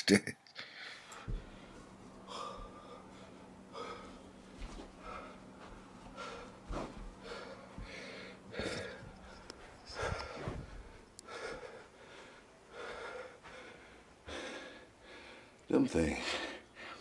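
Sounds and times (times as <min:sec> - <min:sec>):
man breathing hard and gasping: 0:06.1 - 0:15.6.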